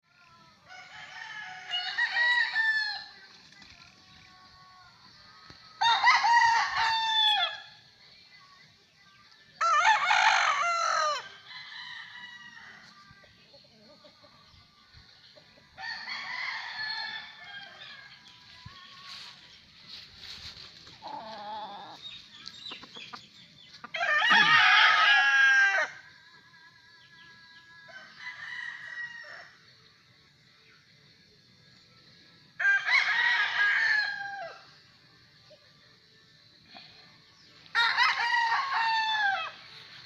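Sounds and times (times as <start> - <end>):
roosters crowing: 0.6 - 3.2, 5.8 - 7.8, 9.6 - 13.0, 15.7 - 19.4, 20.2 - 22.1, 23.8 - 26.1, 27.9 - 29.6, 32.6 - 34.8, 37.7 - 39.7.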